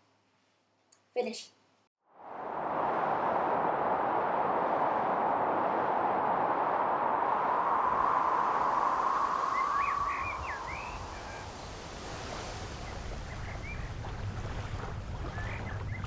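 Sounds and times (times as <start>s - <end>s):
low rumble: 2.1s - 10.9s
rushing noise: 2.1s - 12.9s
bird chirps: 9.4s - 11.8s, 12.8s - 14.0s, 15.2s - 16.0s.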